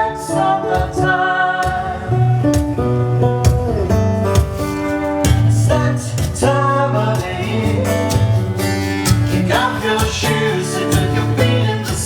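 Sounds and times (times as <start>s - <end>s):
strummed acoustic guitar: 0.0s - 12.0s
person singing: 5.5s - 8.5s, 9.3s - 12.0s.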